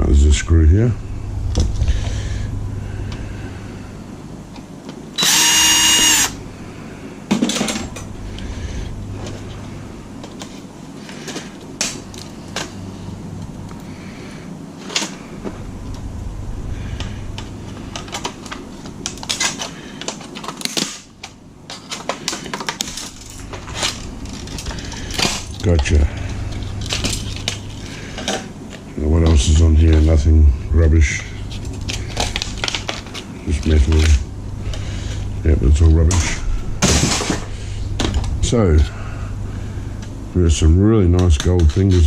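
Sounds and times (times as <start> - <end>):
power drill whine: 5.2 - 6.4.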